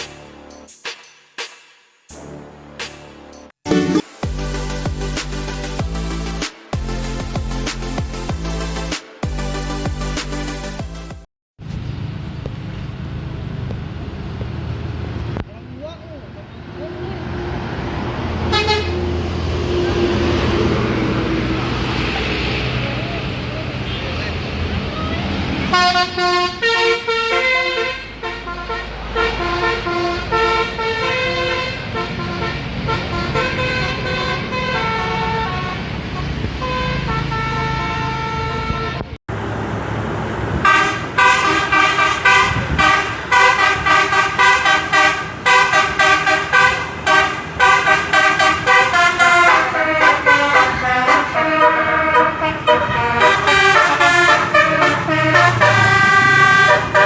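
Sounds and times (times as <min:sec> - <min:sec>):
bus multi-tone horn melody: 0:03.7 - 0:11.3, 0:17.2 - 0:22.1, 0:25.6 - 0:39.2, 0:40.5 - 0:57.0.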